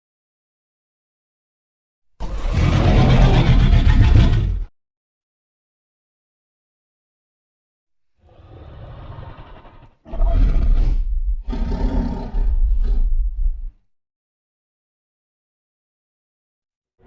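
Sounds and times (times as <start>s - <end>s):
creature low growl: 2.2s - 4.7s, 8.2s - 13.8s
creature roaring: 2.2s - 4.7s, 8.2s - 13.7s.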